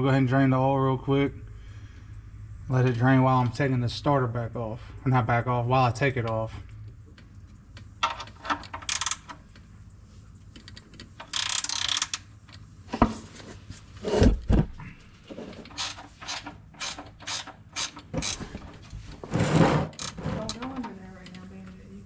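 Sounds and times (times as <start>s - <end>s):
socket ratchet clicking: 8.0s - 9.6s, 10.6s - 12.3s, 15.7s - 18.4s, 20.0s - 20.2s.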